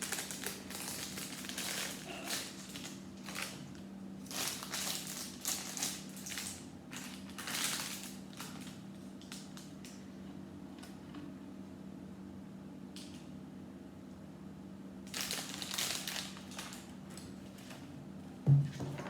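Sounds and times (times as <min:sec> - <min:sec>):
plastic bags crinkling: 0:00.0 - 0:10.0, 0:15.1 - 0:17.9.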